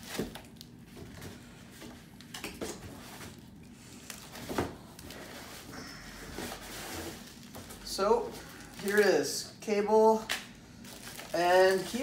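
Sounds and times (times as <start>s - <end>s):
packaging rustling: 6.4s - 9.4s, 10.3s - 12.0s.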